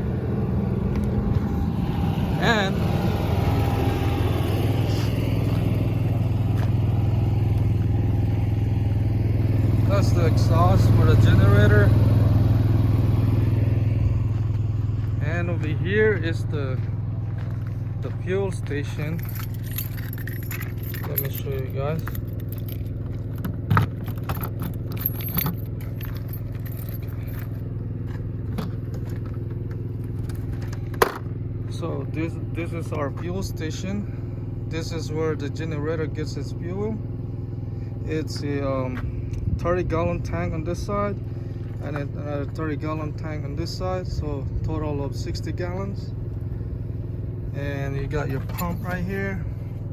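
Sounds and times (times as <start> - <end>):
generator humming: 0.0 - 44.4
handling clicks and rattles: 18.9 - 27.6, 48.3 - 49.2.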